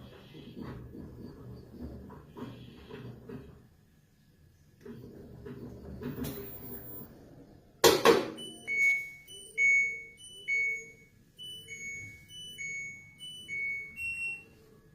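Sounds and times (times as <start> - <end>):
washing machine beep melody: 8.2 - 14.9.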